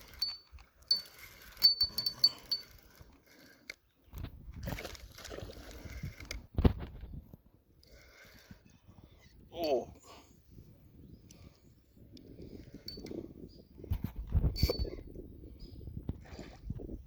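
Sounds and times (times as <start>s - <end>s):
fishing tackle clinking: 0.0s - 3.4s, 9.6s - 10.2s.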